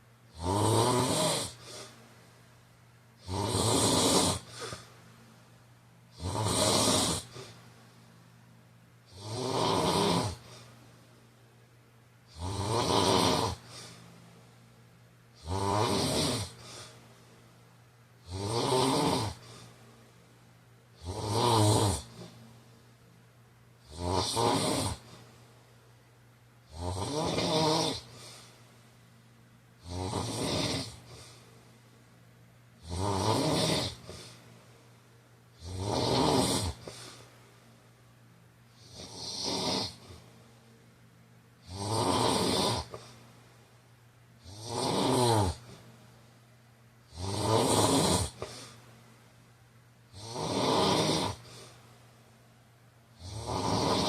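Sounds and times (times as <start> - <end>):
man snoring: 0.3 - 1.9, 3.2 - 4.8, 6.1 - 7.6, 9.1 - 10.6, 12.3 - 14.0, 15.4 - 16.9, 18.2 - 19.7, 21.0 - 22.4, 23.8 - 25.2, 26.7 - 28.3, 29.8 - 31.2, 32.8 - 34.4, 35.6 - 37.0, 38.8 - 40.2, 41.6 - 43.1, 44.4 - 45.8, 47.1 - 48.7, 50.1 - 51.7, 53.2 - 54.0.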